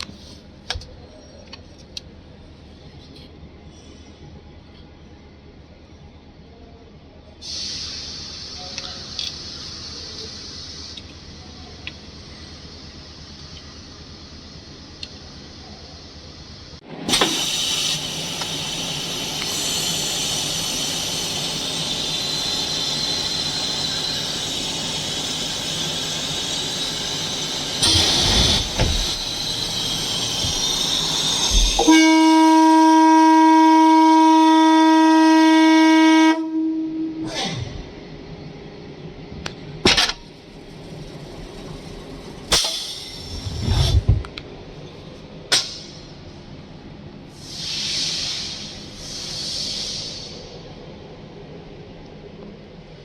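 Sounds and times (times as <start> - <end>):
welding machine hiss: 17.1 - 31.9.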